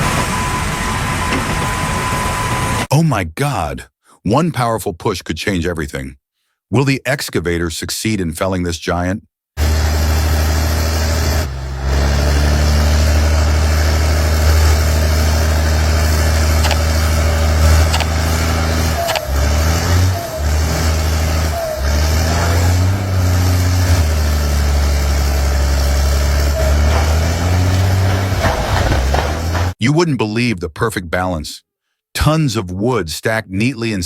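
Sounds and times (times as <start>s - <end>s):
excavator diesel engine running hard: 0.0s - 2.9s, 9.6s - 29.8s
wood snapping: 26.6s - 29.8s.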